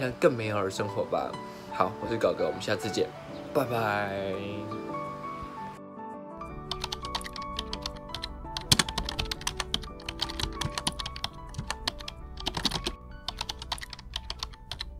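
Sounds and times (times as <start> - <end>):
background music: 0.0 - 14.9
keyboard typing clicks: 6.7 - 14.9.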